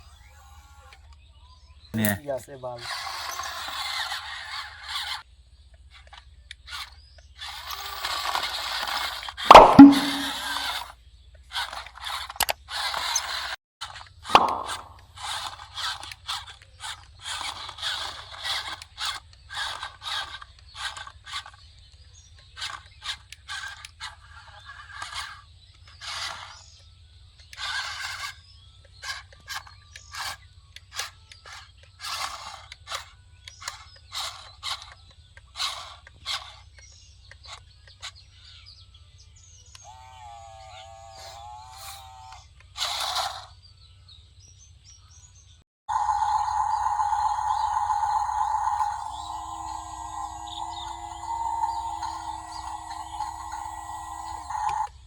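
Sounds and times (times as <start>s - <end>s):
faint low hum: 45.9s - 54.9s.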